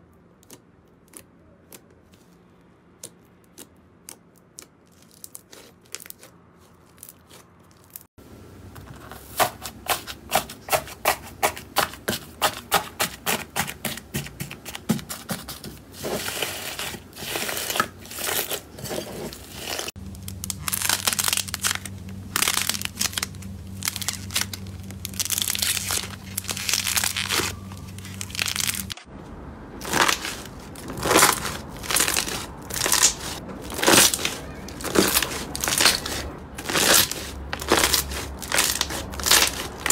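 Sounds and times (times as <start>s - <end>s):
slime crackling and popping: 19.5s - 29.1s, 29.8s - 39.9s.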